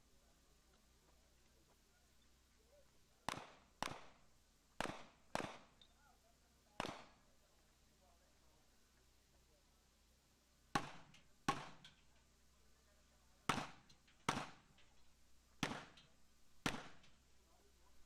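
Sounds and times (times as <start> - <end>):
handgun shots with echo: 3.3 - 4.2, 4.8 - 5.7, 6.8 - 7.1, 16.6 - 17.1.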